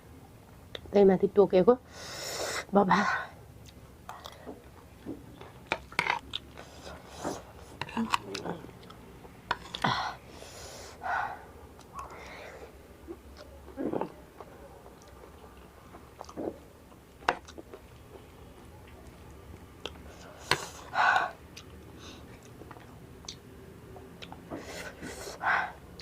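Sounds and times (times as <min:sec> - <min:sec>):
chewing and mouth sounds: 0:13.1 - 0:19.2, 0:21.2 - 0:24.6.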